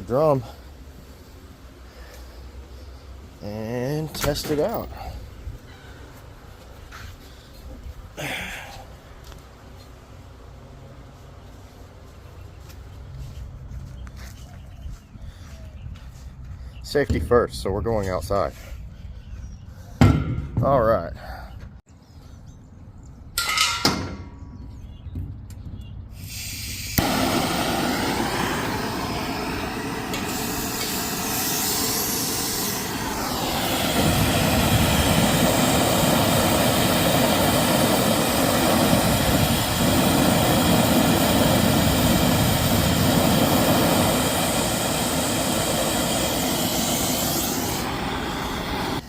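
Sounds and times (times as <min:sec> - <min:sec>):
gas hissing from cylinder valve: 0:26.1 - 0:49.0.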